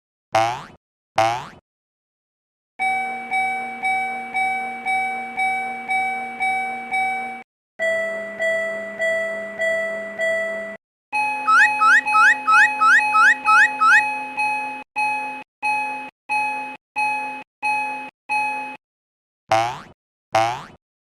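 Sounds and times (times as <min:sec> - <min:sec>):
boing sound effect: 0:00.4 - 0:01.6, 0:11.5 - 0:14.0, 0:19.5 - 0:20.8
railroad crossing bell ringing: 0:02.8 - 0:14.5.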